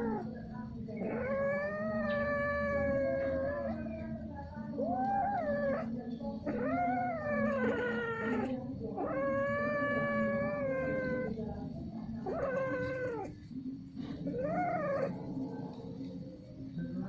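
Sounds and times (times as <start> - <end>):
cats yowling: 0.0 - 0.4, 1.0 - 11.4, 12.1 - 13.6, 14.2 - 15.5.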